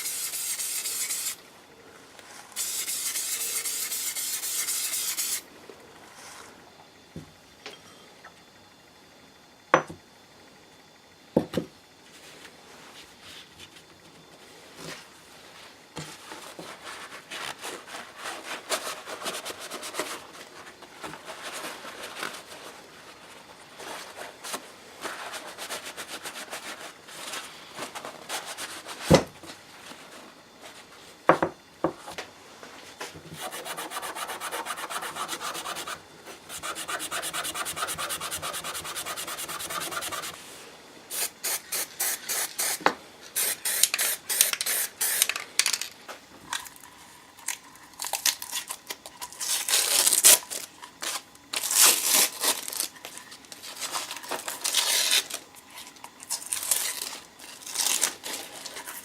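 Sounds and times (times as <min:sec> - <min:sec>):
hand sanding strokes: 0:00.0 - 0:01.4, 0:02.6 - 0:05.4, 0:33.4 - 0:40.4.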